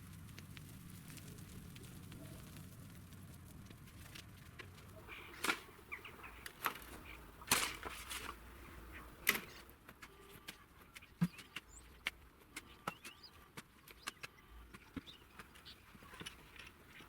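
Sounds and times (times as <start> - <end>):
faint bird chirps: 5.0 - 7.2, 8.9 - 17.0.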